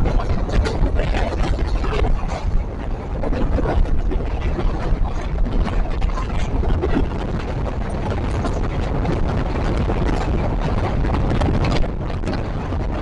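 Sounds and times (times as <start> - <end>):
wind noise on microphone: 0.0 - 13.0.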